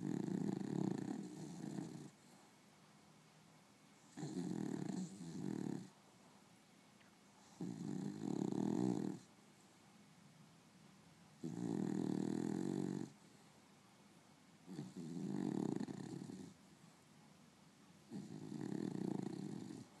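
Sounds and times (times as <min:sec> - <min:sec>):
dog snoring: 0:00.0 - 0:02.4, 0:04.0 - 0:06.0, 0:07.4 - 0:09.3, 0:11.4 - 0:13.4, 0:14.6 - 0:16.6, 0:18.1 - 0:20.0.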